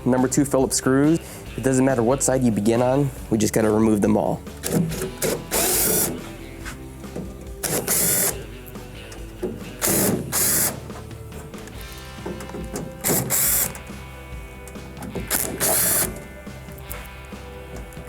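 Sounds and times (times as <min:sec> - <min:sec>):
background music: 0:00.0 - 0:18.0
power screwdriver whirring: 0:04.6 - 0:08.5, 0:09.1 - 0:13.9, 0:14.6 - 0:17.1.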